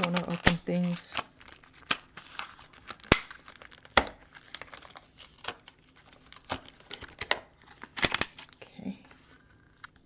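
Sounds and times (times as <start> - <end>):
packaging crinkling and tearing: 0.0 - 10.0
sharp plastic snaps: 2.9 - 4.2, 6.5 - 8.5.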